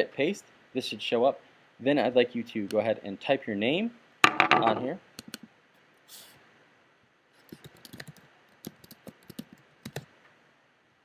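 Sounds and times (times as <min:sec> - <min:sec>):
computer keyboard keys clicking: 0:07.5 - 0:10.1.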